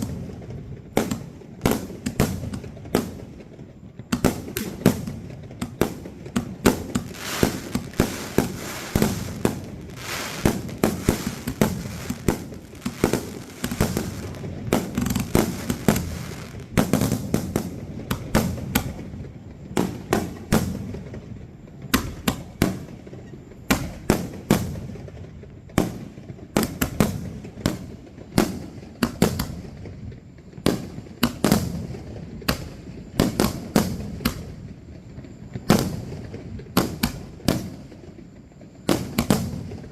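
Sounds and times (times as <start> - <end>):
fireworks bangs and crackle: 0.0 - 39.9.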